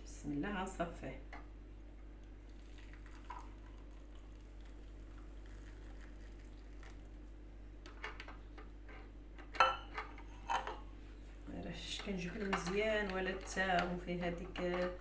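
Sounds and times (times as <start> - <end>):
low steady hum: 0.0 - 15.0
liquid pattering while strained: 2.1 - 7.4.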